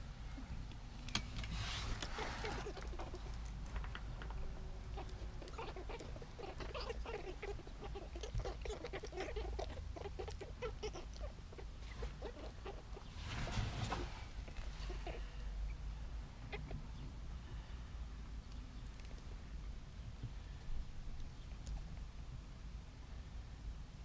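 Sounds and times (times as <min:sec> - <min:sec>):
rustle: 0:00.0 - 0:24.0
baby rabbits squeaking: 0:01.6 - 0:19.4.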